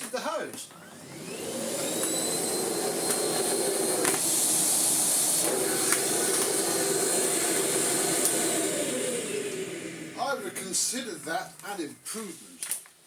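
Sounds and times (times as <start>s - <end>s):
vacuum cleaner motor whining: 0.7s - 11.1s.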